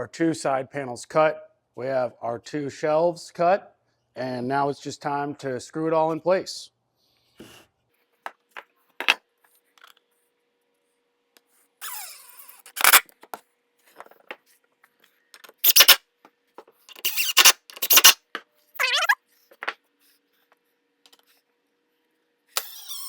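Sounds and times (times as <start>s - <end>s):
drill driving screws into wood: 11.8s - 13.1s, 15.6s - 16.0s, 16.9s - 18.2s, 22.5s - 23.0s.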